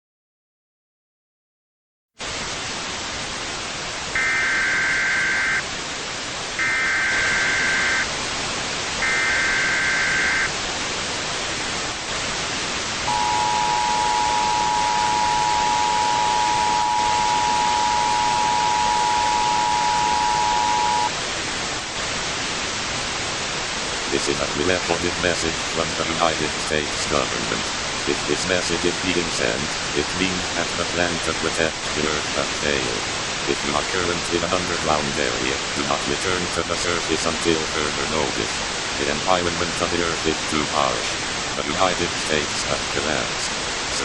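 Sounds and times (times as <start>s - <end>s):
static hiss: 2.2s - 44.0s
two-tone attention signal: 4.2s - 5.6s, 6.6s - 8.1s, 9.0s - 10.5s, 13.1s - 21.2s
warbling digital header tones: 4.2s - 5.6s, 6.6s - 8.1s, 9.0s - 10.5s, 13.1s - 21.2s.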